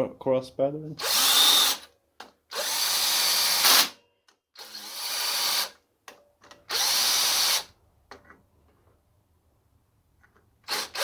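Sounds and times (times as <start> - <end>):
power drill driving bolts: 1.0 - 4.0, 4.6 - 5.8, 6.4 - 7.7, 10.6 - 11.0.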